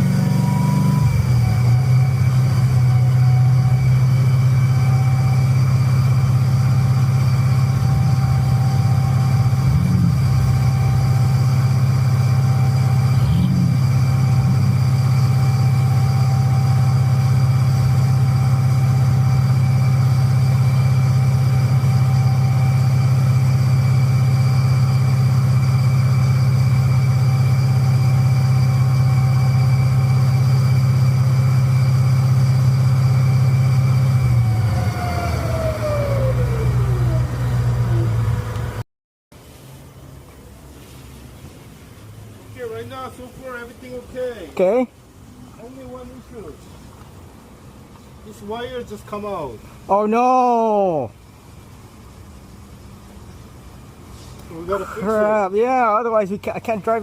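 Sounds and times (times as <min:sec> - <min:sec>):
car engine idling: 0:00.0 - 0:38.8.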